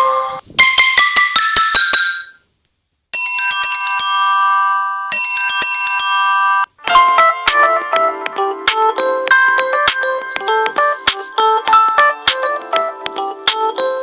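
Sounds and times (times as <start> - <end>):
chiming ringtone: 0.0 - 2.4, 3.2 - 7.3
phone ringtone mallet notes: 0.0 - 2.4, 3.2 - 14.0.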